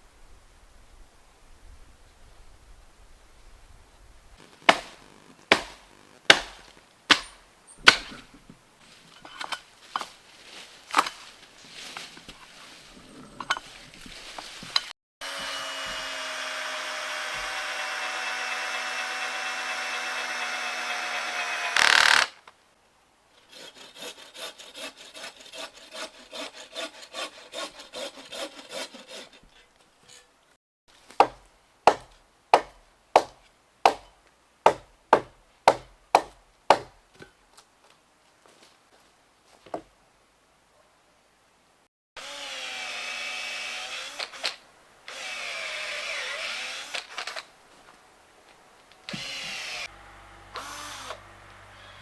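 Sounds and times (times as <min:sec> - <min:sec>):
sharp wooden knocks: 0:04.6 - 0:08.3, 0:21.8 - 0:22.4
power tool running: 0:15.2 - 0:22.4, 0:49.1 - 0:52.0
quick even sawing strokes: 0:21.8 - 0:22.3, 0:23.5 - 0:29.4.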